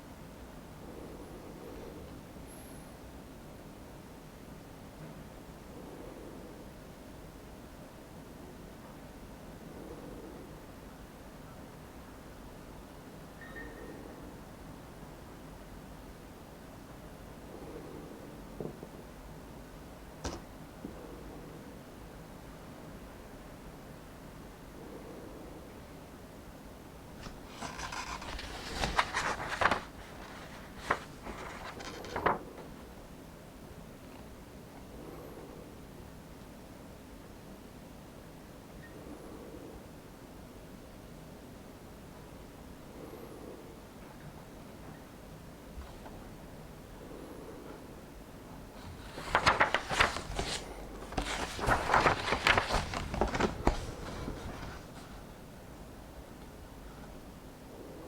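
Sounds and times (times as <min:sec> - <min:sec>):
book pages rustling and turning: 0:27.2 - 0:32.7, 0:48.8 - 0:55.3.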